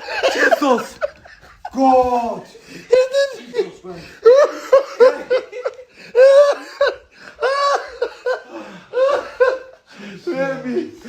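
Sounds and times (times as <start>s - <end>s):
person laughing loudly: 0.0s - 9.9s.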